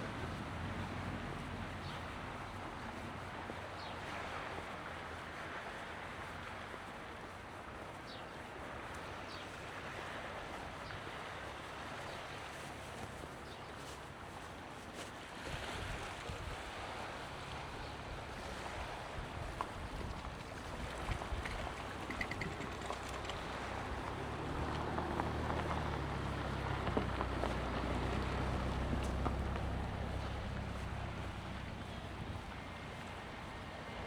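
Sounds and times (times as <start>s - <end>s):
waves washing on shore: 8.6s - 34.0s
wind buffeting microphone: 15.5s - 34.0s.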